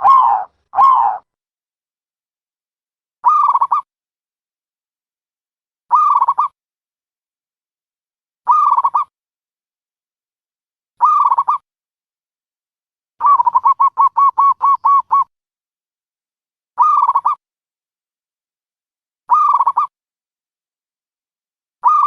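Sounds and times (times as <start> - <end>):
dove cooing: 0.0 - 1.2, 13.2 - 15.2.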